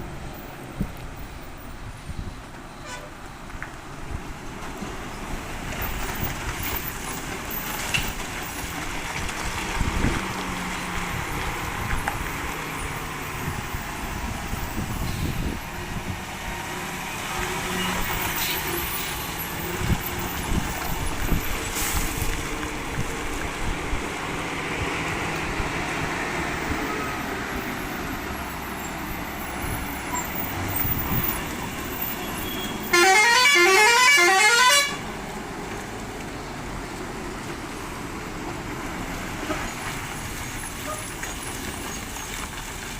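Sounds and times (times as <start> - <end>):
road and wind noise: 0.0 - 42.9
musical air horn: 32.8 - 35.0.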